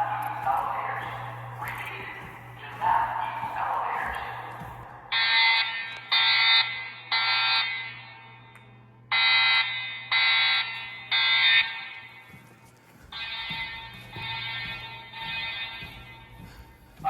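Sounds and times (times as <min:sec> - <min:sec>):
evacuation horn tone blasts: 0:13.2 - 0:16.3.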